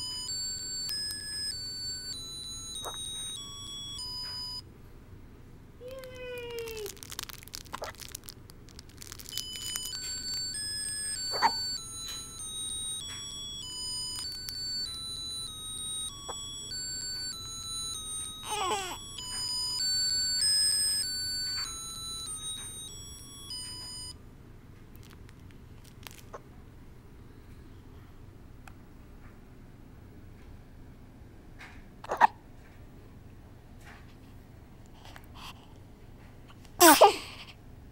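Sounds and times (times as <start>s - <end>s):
electronic beeping tune: 0.0s - 4.6s, 9.4s - 24.1s
child squealing: 18.5s - 19.0s.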